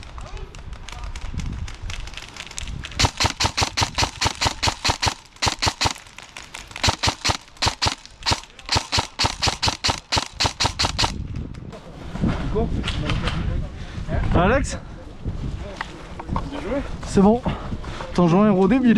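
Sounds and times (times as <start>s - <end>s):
airsoft rifle rapid shots: 3.0s - 6.1s, 6.7s - 11.2s.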